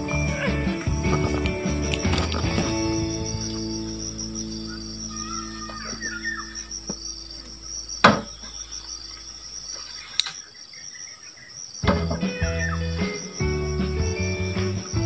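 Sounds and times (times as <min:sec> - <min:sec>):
insects chirring: 0:00.0 - 0:15.0
sharp knocks: 0:08.0 - 0:08.4.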